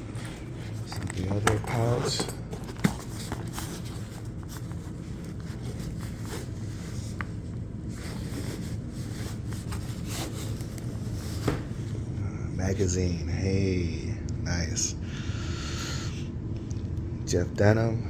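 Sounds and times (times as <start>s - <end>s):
rustling items in a bag: 0.0s - 12.1s
steady low hum: 0.0s - 18.0s.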